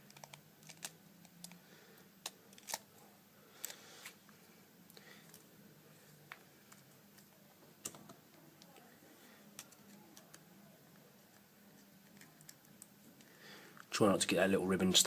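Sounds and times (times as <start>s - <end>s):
small phone parts clicking: 0.1s - 1.6s, 2.2s - 2.8s.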